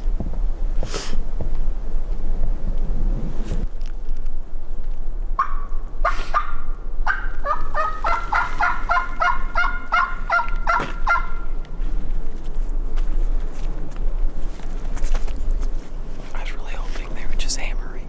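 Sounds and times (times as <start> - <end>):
turkey yelping: 5.4 - 11.6.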